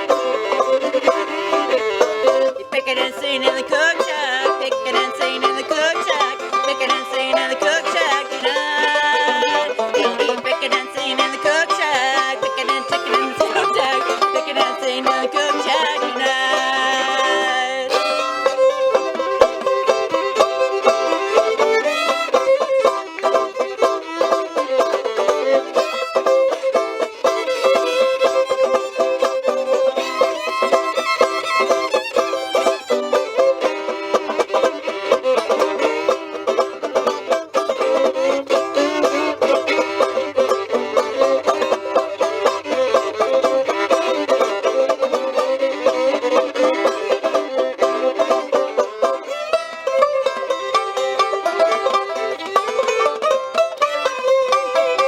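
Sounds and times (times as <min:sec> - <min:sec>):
acoustic country string music: 0:00.0 - 0:55.0.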